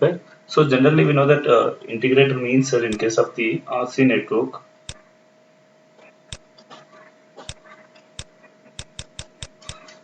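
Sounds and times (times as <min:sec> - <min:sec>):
faint steady hum: 0:00.0 - 0:10.0
sharp clicks: 0:06.3 - 0:06.6, 0:07.5 - 0:09.9.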